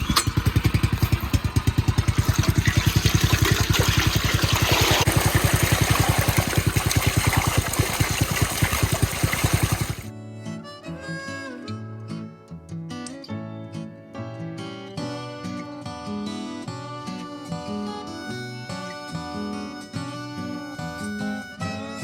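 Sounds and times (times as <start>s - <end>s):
small engine running: 0.0s - 10.1s.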